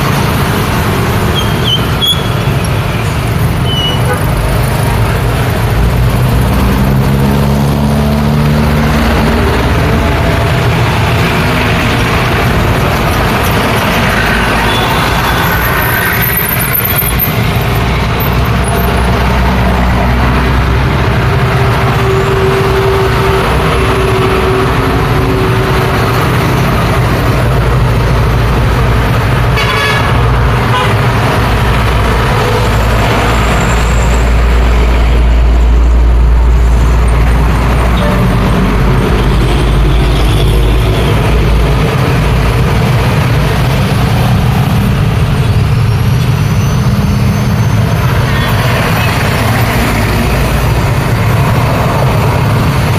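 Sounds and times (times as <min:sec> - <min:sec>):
heavy traffic rumble: 0:00.0 - 0:52.9
vehicle horn: 0:29.6 - 0:31.0.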